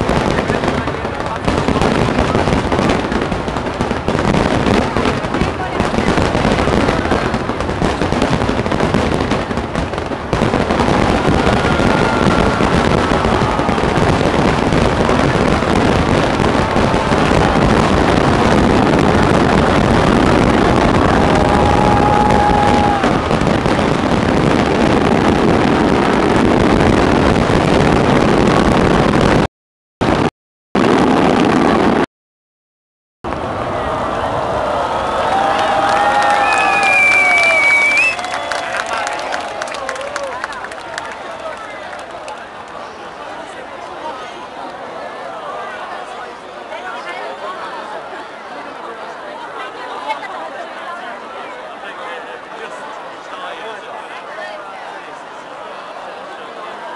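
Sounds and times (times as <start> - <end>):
fireworks bangs and crackling: 0.0 - 32.1, 33.3 - 43.6
faint firework whistles: 36.3 - 38.6.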